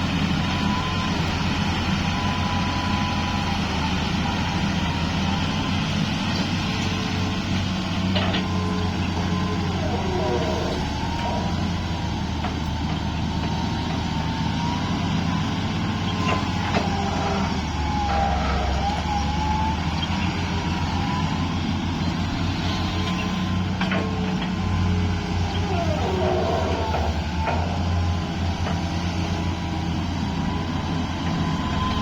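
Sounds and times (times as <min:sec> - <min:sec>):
heavy diesel machinery engine hum: 0:00.0 - 0:32.0
squealing whine: 0:07.7 - 0:12.4, 0:13.6 - 0:21.6, 0:24.6 - 0:28.4, 0:29.6 - 0:32.0.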